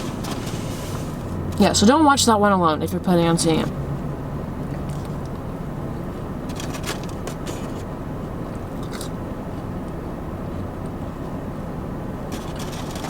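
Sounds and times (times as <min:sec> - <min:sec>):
car engine idling: 0:00.0 - 0:13.0
clicks and rustles: 0:06.4 - 0:07.9, 0:12.3 - 0:13.0.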